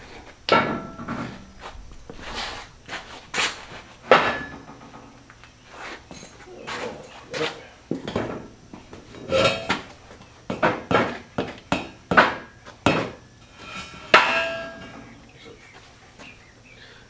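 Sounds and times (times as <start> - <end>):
metal striking steel: 14.1 - 15.2.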